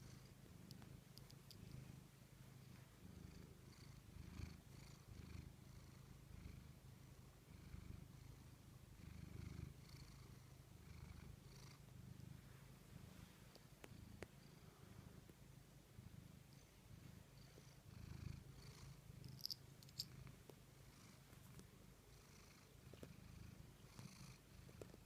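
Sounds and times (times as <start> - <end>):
cat purring: 0.0 - 25.0.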